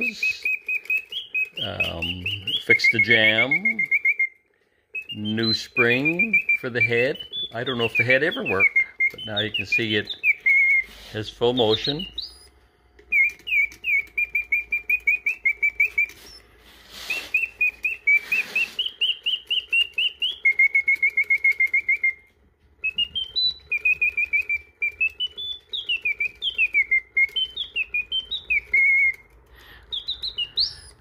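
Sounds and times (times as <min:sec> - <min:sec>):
mechanical bird whistle chirping: 0:00.0 - 0:31.0
short breathy hisses: 0:16.2 - 0:17.4.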